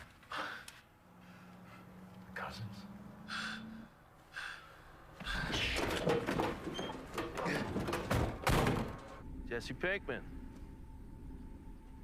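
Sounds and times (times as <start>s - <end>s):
knocks thuds and clattering: 5.4s - 9.2s.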